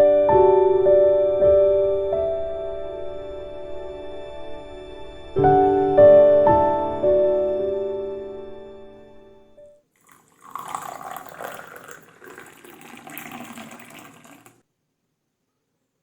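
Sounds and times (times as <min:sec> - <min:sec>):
piano-like music: 0:00.0 - 0:09.8
water running: 0:10.0 - 0:14.6.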